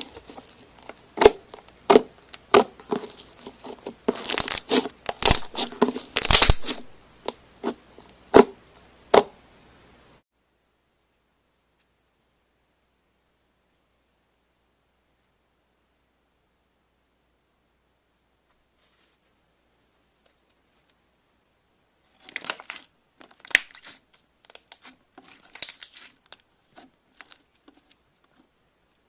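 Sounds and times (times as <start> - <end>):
slime crackling and popping: 0.0 - 9.3, 22.2 - 27.8.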